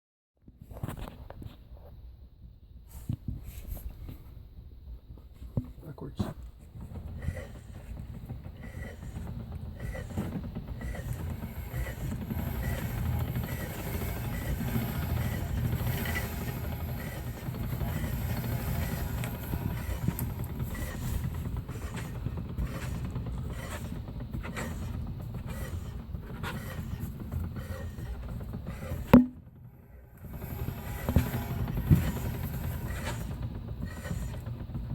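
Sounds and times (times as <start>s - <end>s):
rear differential rumble: 6.5s - 34.9s
discs rubbing: 6.6s - 29.4s, 30.2s - 34.9s
clunking and rattling: 6.6s - 34.9s.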